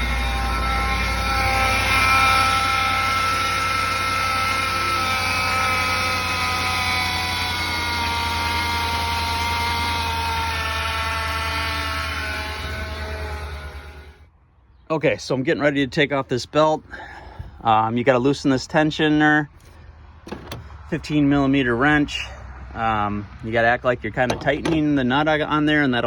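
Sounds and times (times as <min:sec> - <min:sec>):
engine drone: 0:00.0 - 0:14.3, 0:19.5 - 0:26.0
high pulley whine: 0:00.0 - 0:14.3, 0:24.2 - 0:26.0.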